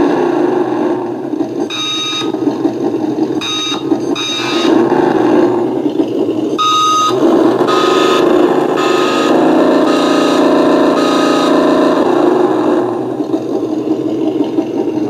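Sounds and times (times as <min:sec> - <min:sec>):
simulated engine from speaker: 0:00.0 - 0:15.0
electronic beeps: 0:01.7 - 0:02.5, 0:03.4 - 0:05.1, 0:06.5 - 0:12.0.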